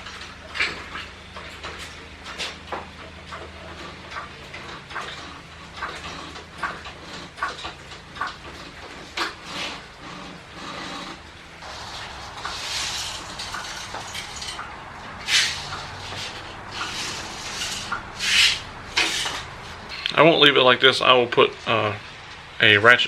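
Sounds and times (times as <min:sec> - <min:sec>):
low steady hum: 0:11.2 - 0:23.0
objects being handled: 0:11.6 - 0:20.1.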